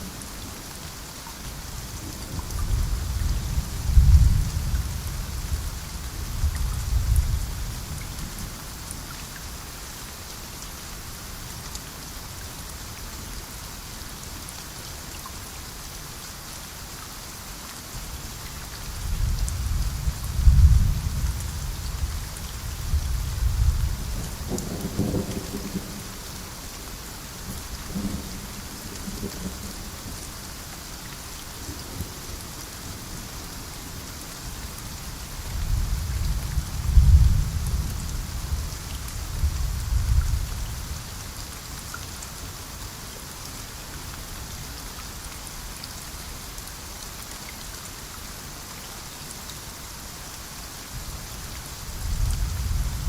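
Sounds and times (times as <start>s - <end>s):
rainfall hissing: 0.0s - 53.0s
low thunder rolling: 35.7s - 38.7s.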